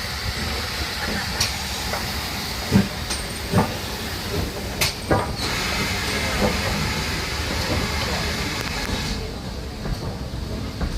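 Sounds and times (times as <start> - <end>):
steam hissing: 0.0 - 9.4.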